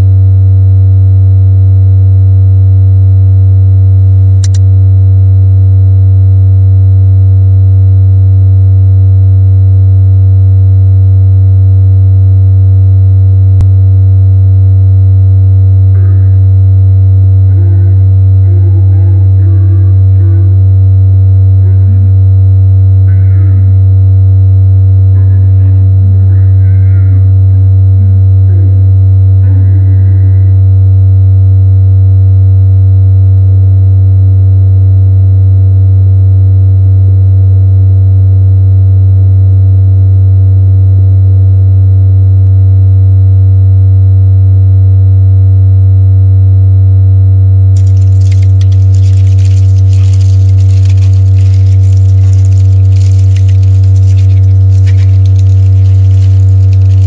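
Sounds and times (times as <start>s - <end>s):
crackling noise: 3.8s - 4.9s, 47.8s - 57.0s.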